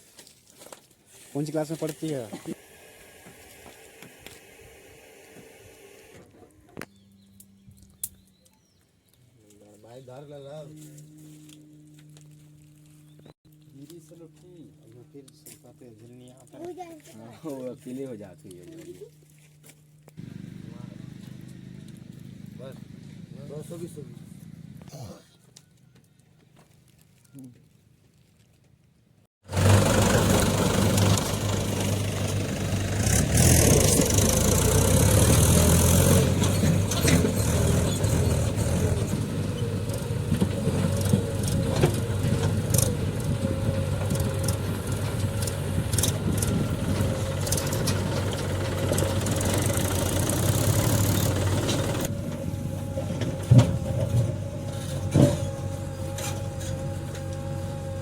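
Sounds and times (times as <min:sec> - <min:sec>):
heavy diesel engines running: 0:20.2 - 0:24.8, 0:29.4 - 0:58.0.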